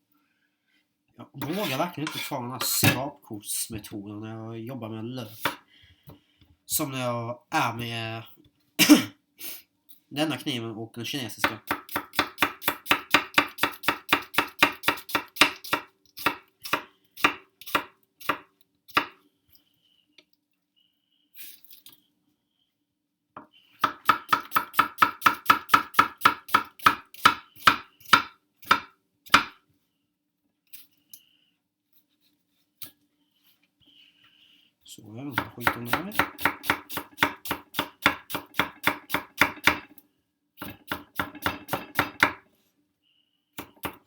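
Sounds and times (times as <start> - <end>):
knife chopping on cutting board: 11.5 - 19.2, 23.8 - 29.6, 35.3 - 39.9, 40.6 - 42.4.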